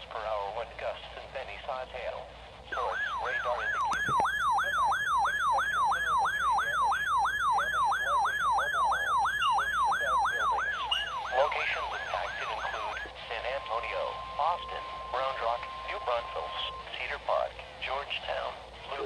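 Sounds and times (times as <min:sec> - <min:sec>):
electronic yelp siren: 0:02.8 - 0:17.0
steady high alert tone: 0:02.8 - 0:17.0.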